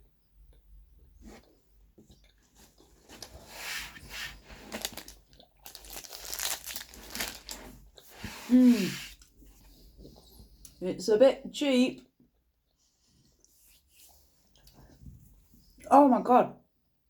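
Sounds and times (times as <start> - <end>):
crunching and chewing: 1.2 - 8.2
wrapper crinkling: 4.3 - 8.0.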